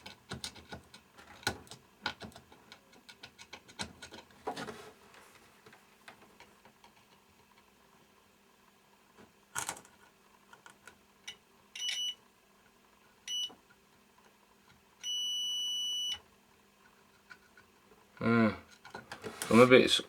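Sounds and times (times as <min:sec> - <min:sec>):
multimeter beeping: 0:15.0 - 0:16.2.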